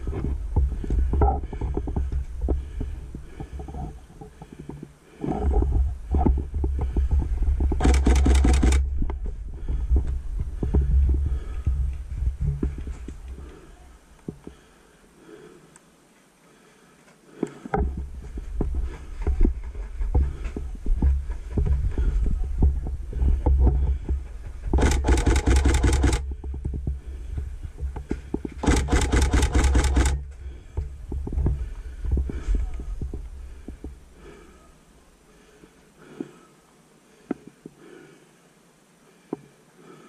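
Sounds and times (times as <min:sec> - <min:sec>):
heavy low rumble: 0:05.5 - 0:13.9
rapid airsoft gunfire: 0:07.8 - 0:08.8, 0:24.8 - 0:26.2, 0:28.6 - 0:30.2.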